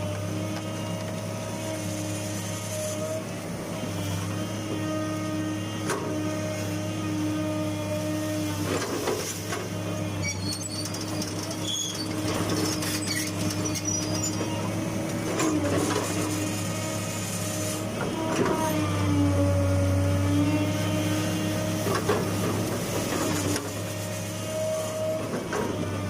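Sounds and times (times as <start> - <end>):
excavator diesel engine: 0.0 - 26.0
machine squeaks: 10.2 - 14.7.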